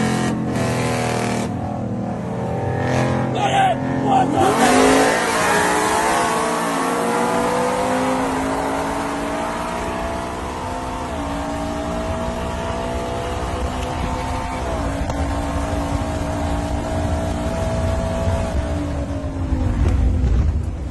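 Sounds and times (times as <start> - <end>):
truck engine at full throttle: 0.0 - 20.9.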